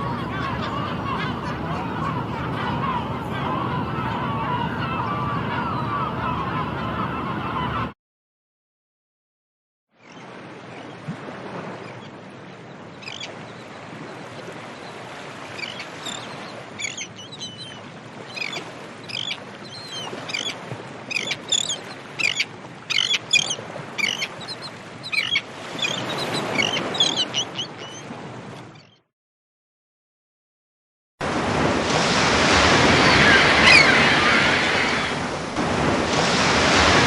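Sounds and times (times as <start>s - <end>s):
seagulls crying: 0.0s - 8.0s, 13.0s - 13.3s, 14.8s - 28.2s, 32.6s - 35.3s.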